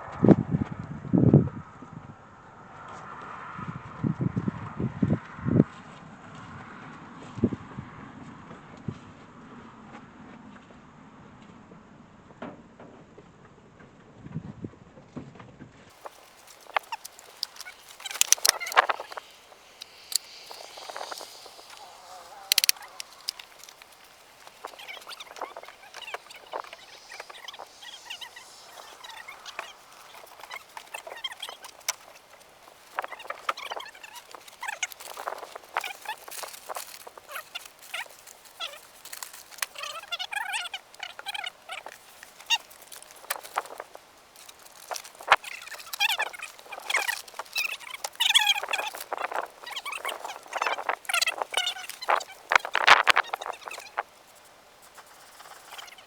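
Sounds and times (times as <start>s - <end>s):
birds chirping: 15.9s - 56.0s
objects being handled: 15.9s - 56.0s.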